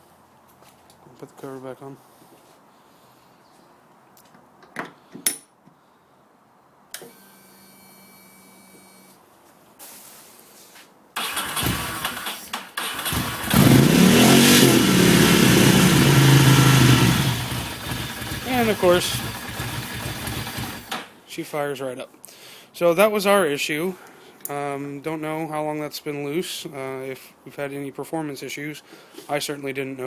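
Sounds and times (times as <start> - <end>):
motorcycle engine starting and revving: 11.2 - 21.1.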